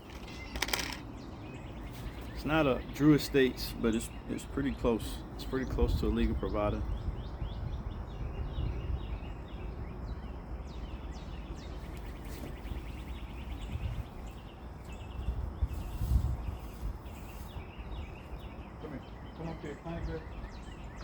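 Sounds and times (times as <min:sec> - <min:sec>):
small birds chirping: 0:00.0 - 0:21.0.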